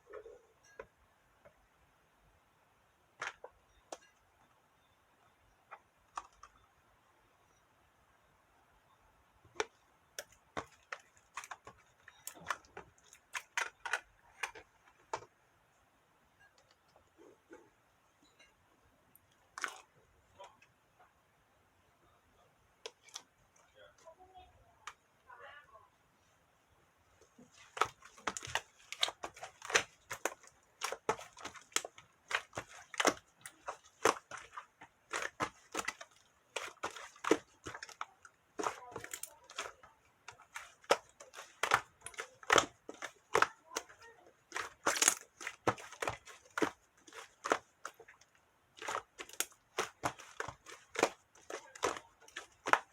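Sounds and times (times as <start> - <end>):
slime squished by hand: 27.3 - 52.9.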